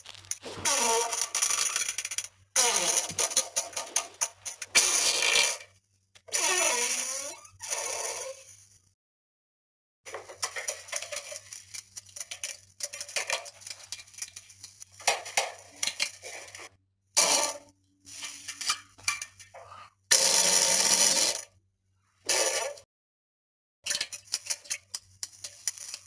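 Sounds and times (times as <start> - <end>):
wet crackly diarrhea sounds: 0.0 - 5.5.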